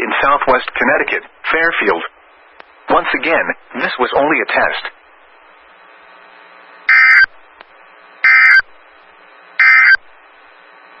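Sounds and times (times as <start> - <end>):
buzzy two-tone digital data bursts: 6.9 - 7.3, 8.2 - 8.7, 9.6 - 10.0.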